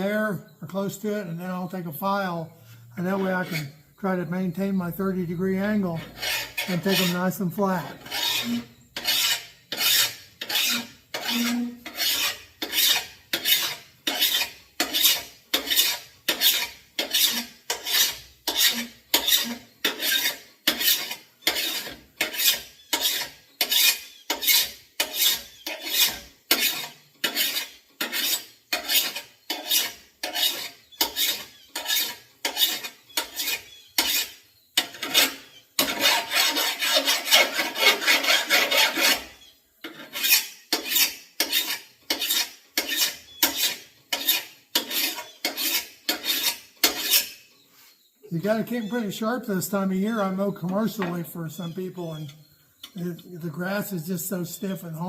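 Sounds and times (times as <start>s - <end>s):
file rasping on steel blade: 3.0s - 3.9s, 5.7s - 47.5s.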